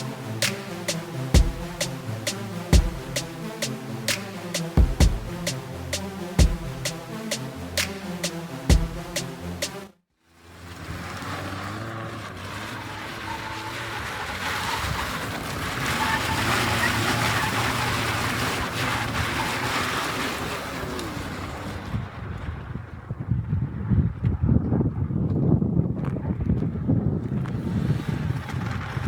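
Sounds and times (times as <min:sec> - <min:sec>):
wind buffeting microphone: 0:21.9 - 0:29.0.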